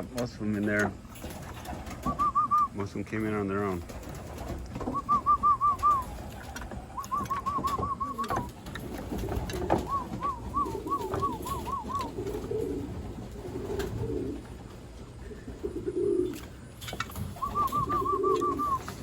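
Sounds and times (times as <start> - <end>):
pigeons cooing: 0.0 - 19.0.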